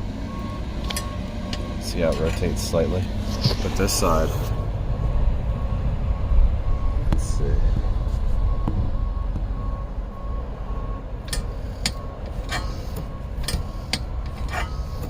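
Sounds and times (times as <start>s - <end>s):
steady low hum: 0.0s - 15.0s
sharp metallic clicks and knocks: 11.2s - 14.9s.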